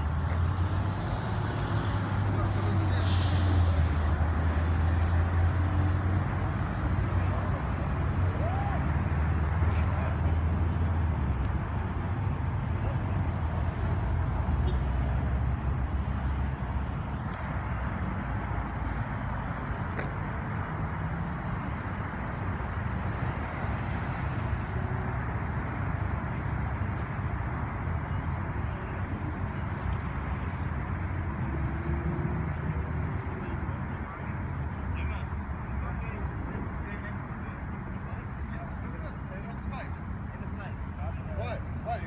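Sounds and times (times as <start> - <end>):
vehicle engine rumbling: 0.0 - 42.0.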